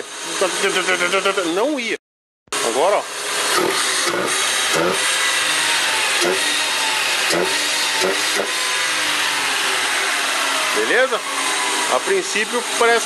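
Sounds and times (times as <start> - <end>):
man talking: 0.3 - 2.0, 10.8 - 11.2, 11.9 - 13.0
car engine revving: 2.6 - 13.0.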